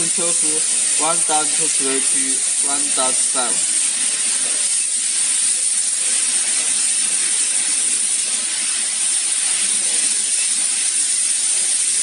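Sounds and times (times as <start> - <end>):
steady hiss: 0.0 - 12.0.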